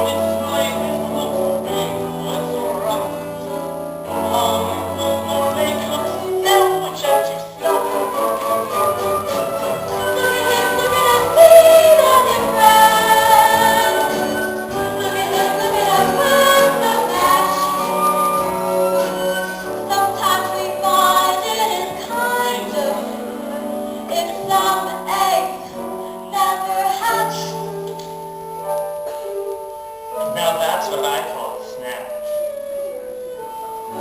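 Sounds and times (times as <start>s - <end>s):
voices singing: 0.0s - 28.4s
instrumental accompaniment: 0.0s - 34.0s.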